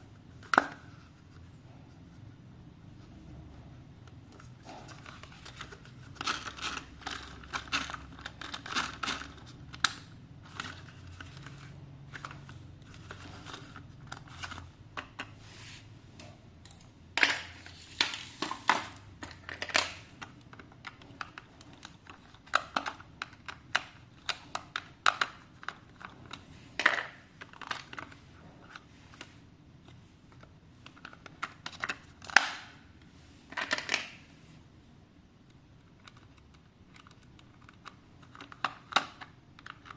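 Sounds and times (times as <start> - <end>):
plastic and cardboard crinkling: 4.2 - 15.4, 17.2 - 32.8.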